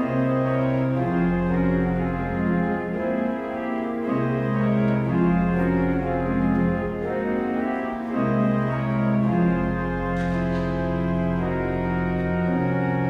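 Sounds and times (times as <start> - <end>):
deep organ bass notes: 0.0 - 13.0
organ playing sustained chords: 0.0 - 13.0.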